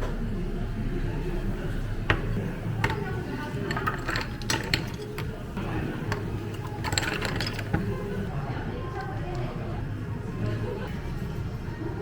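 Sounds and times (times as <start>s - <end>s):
clinks of cafe utensils: 2.1s - 8.3s.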